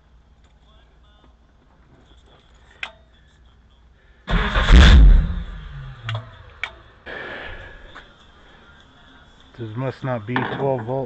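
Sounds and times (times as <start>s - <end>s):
engine cranking by starter: 4.3s - 6.7s.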